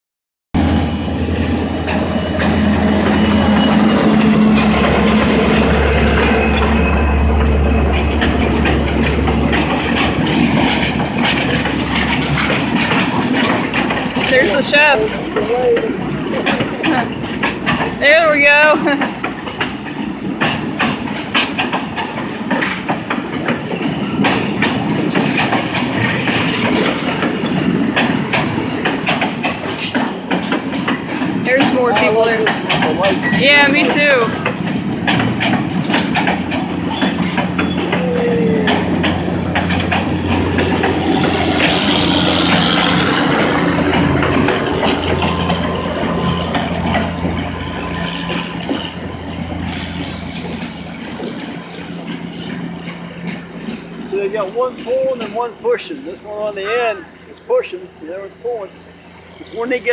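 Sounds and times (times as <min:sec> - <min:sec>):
locomotive engine humming: 0:00.6 - 0:59.9
train cars clicking and knocking: 0:00.6 - 0:59.9.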